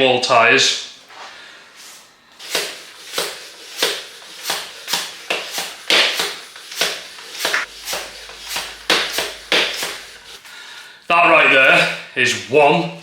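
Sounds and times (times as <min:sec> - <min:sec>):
short hissing rubbing strokes: 0:01.1 - 0:10.5.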